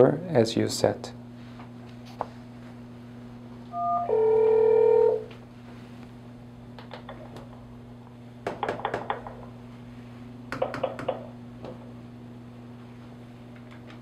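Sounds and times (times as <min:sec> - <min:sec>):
low electrical hum: 0:00.0 - 0:14.0
telephone ringing: 0:03.7 - 0:05.3.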